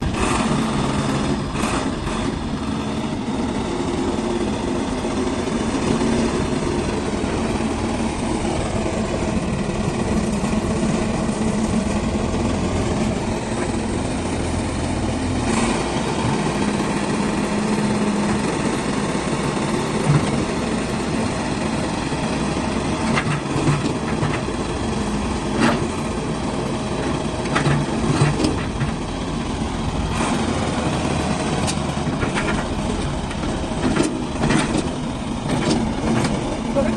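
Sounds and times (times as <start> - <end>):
diesel engine running: 0.0 - 36.9.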